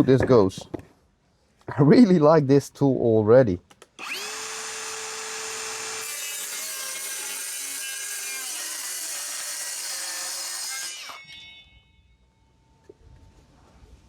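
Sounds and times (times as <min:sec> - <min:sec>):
saw motor whine: 0:04.0 - 0:11.5
circular saw cutting wood: 0:04.0 - 0:11.9.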